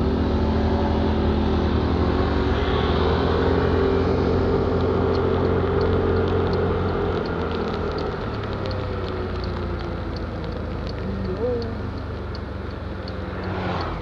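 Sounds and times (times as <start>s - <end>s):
vehicle engine running: 0.0s - 14.0s
raindrops ticking: 3.4s - 14.0s.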